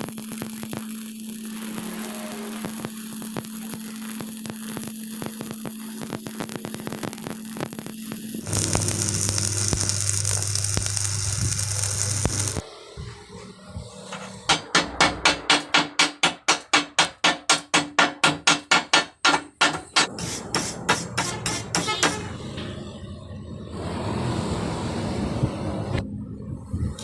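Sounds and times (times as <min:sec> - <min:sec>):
electric arc welding sizzling: 0:00.0 - 0:12.6, 0:20.0 - 0:22.3
low electrical hum: 0:08.1 - 0:12.6.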